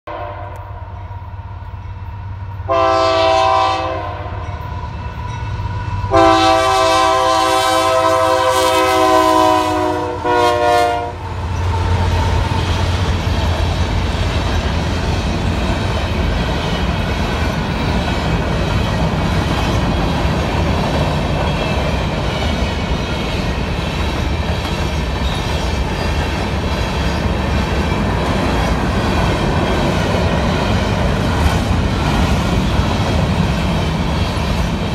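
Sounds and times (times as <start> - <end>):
locomotive horn blasts: 0.1 - 1.1, 2.7 - 4.7, 6.0 - 11.9
train rumbling past: 0.1 - 34.9
wheels clattering on rails: 11.4 - 34.9.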